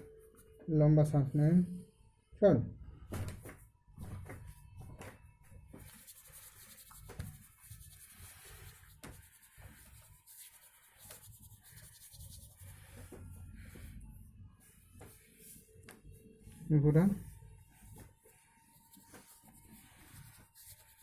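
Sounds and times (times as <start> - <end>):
hands rubbing and brushing: 5.7 - 14.0, 14.6 - 21.0.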